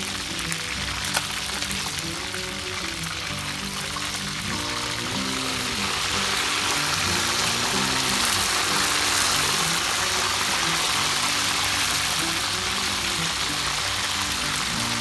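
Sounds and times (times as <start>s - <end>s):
food deep-frying in oil: 0.0s - 15.0s
soft background music: 0.0s - 15.0s.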